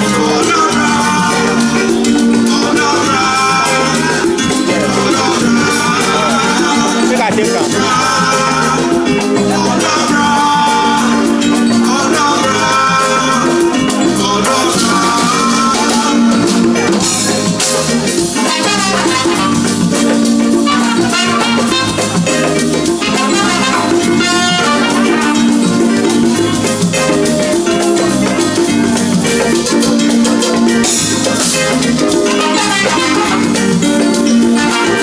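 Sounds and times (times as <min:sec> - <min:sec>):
drum kit beat: 0:00.0 - 0:35.0
live band playing: 0:00.0 - 0:35.0.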